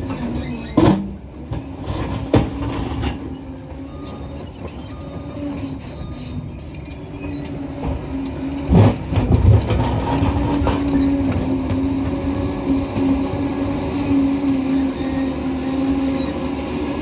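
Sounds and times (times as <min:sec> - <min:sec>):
dozer engine running: 0:00.0 - 0:17.0.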